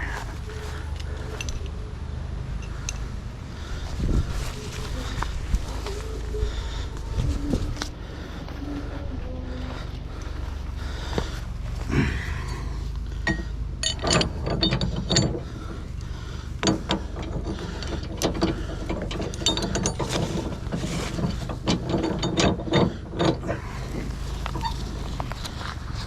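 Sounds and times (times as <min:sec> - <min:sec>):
steady low hum: 0:00.0 - 0:26.0
metallic clicks and clanks: 0:02.6 - 0:03.2, 0:12.4 - 0:25.7.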